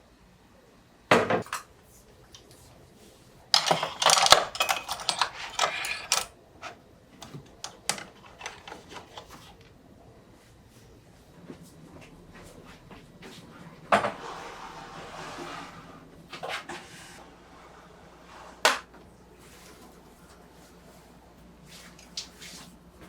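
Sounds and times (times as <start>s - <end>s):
dishes and cutlery clattering: 3.5s - 6.8s.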